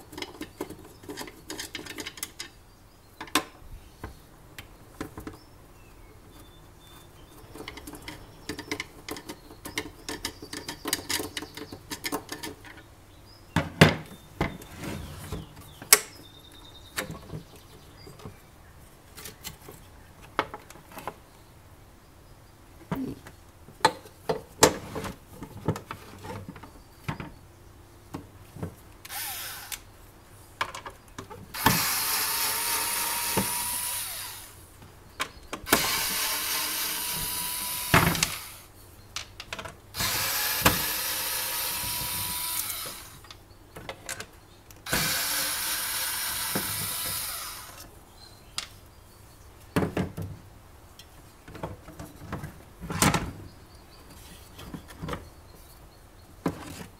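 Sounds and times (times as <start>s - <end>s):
cordless drill running: 29.1s - 29.8s, 31.6s - 34.6s, 35.7s - 38.6s, 40.0s - 43.2s, 44.9s - 47.8s.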